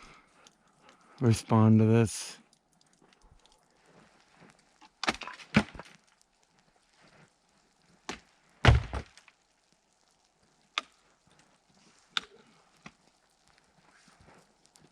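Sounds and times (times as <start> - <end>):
ice breaking and falling thud: 5.0 - 6.0, 8.1 - 9.4.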